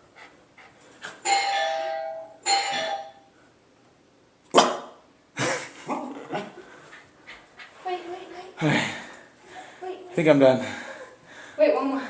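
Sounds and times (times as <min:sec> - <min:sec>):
doorbell ding-dong chime: 0:01.3 - 0:03.3.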